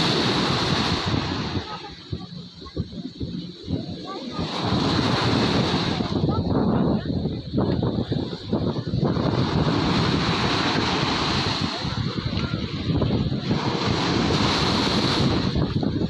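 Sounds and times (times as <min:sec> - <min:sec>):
surf washing on a beach: 0:00.0 - 0:16.0
wind buffeting microphone: 0:00.0 - 0:16.0.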